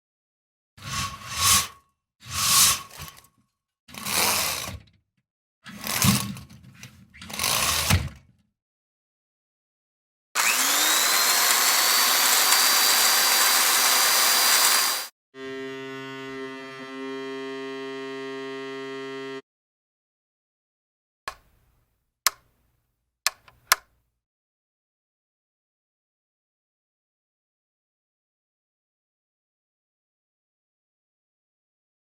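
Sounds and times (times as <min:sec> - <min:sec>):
mechanical whirr with whine: 0:14.4 - 0:19.4.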